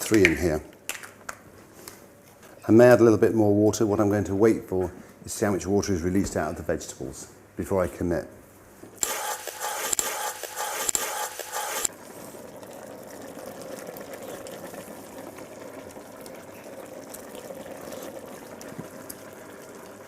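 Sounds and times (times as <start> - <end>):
pan simmering: 11.9 - 20.0
water pouring into pan: 11.9 - 20.0.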